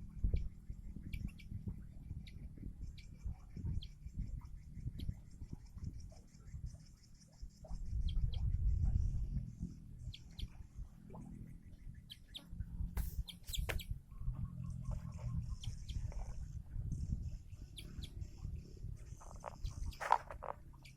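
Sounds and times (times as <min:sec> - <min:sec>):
bird chirping: 0:06.1 - 0:14.0, 0:14.6 - 0:16.3, 0:16.9 - 0:20.9
low rumble: 0:07.5 - 0:20.8.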